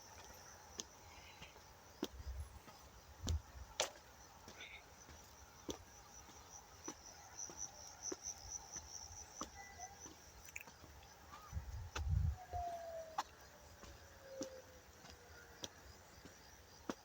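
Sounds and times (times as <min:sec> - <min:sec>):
high-pitched insect trill: 0:00.0 - 0:17.0.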